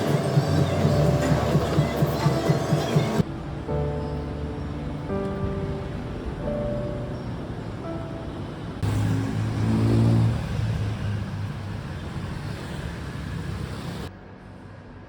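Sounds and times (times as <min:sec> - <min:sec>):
street traffic: 0:00.0 - 0:15.0
vehicle engine hum: 0:00.0 - 0:15.0.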